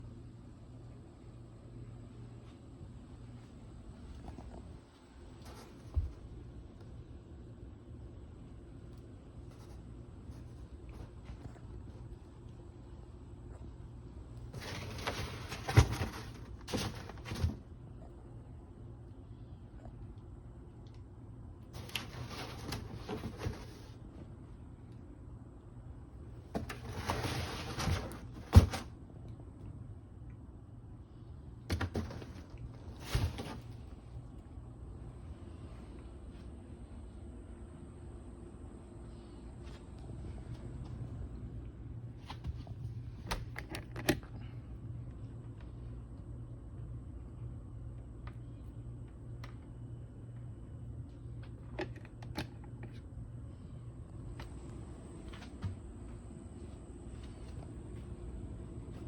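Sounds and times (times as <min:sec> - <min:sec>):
low steady hum: 0:00.0 - 0:59.0
scraping and rustling handling noises: 0:14.4 - 0:17.7, 0:21.8 - 0:24.3, 0:26.5 - 0:28.9, 0:31.7 - 0:34.2.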